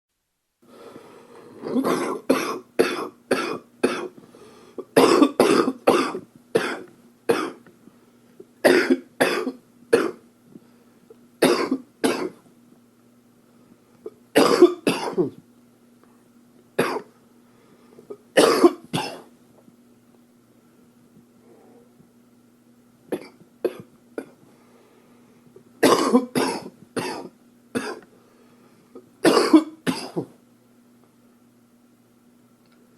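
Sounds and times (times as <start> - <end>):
man coughing: 1.6 - 4.2, 5.0 - 7.6, 8.6 - 10.2, 11.4 - 12.4, 14.4 - 15.4, 16.8 - 17.1, 18.4 - 19.3, 25.8 - 28.0, 29.2 - 30.4.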